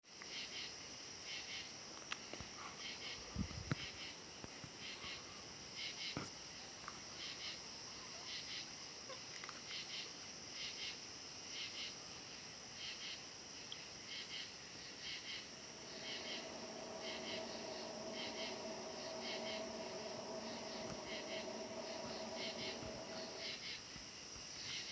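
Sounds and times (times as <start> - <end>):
insects chirping: 14.2 - 23.8
continuous high drone: 15.3 - 23.6
low thumps: 15.5 - 23.6.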